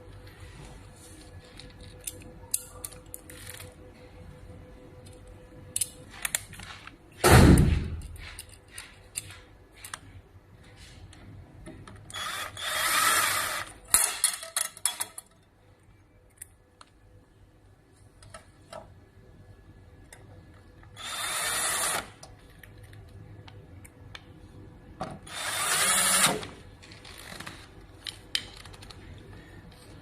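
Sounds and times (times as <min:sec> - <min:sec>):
parts clicking and knocking: 0:05.0 - 0:12.4
heavy thump: 0:07.2 - 0:08.0
small power tool whirring: 0:12.1 - 0:13.7, 0:21.0 - 0:22.1, 0:25.3 - 0:26.5.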